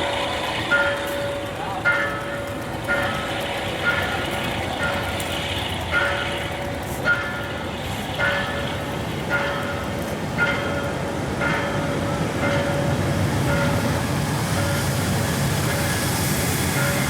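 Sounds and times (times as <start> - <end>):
diesel train rumbling: 0.0 - 17.0.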